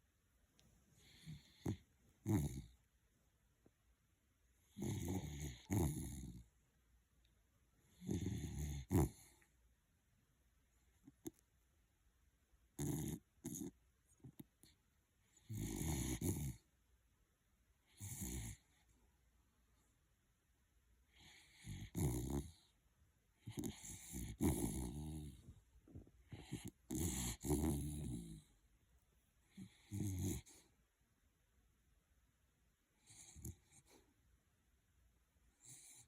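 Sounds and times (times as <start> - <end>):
dog snoring: 1.0 - 2.8, 4.6 - 6.5, 7.8 - 9.5, 12.7 - 16.7, 17.8 - 18.8, 21.1 - 22.8, 23.4 - 28.6, 29.4 - 30.7, 33.0 - 34.0, 35.6 - 36.0.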